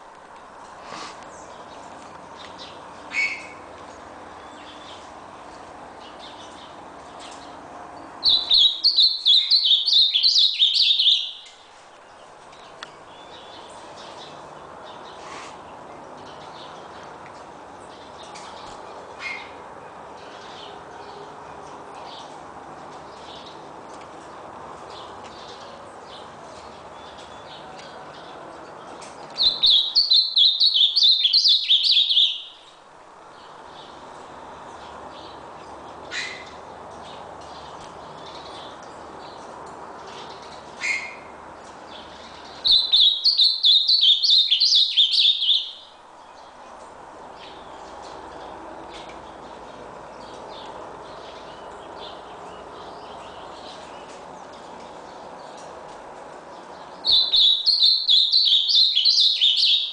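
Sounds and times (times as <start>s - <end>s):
steady background noise: 0.0s - 59.9s
bird singing: 1.3s - 5.1s, 6.0s - 15.2s, 24.9s - 35.4s, 40.1s - 46.7s, 47.3s - 55.7s, 56.5s - 59.9s.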